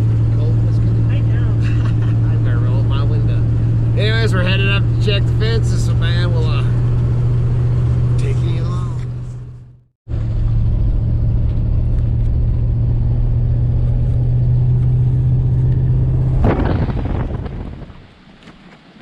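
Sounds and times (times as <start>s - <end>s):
engine and tyre drone in car: 0.0s - 19.0s.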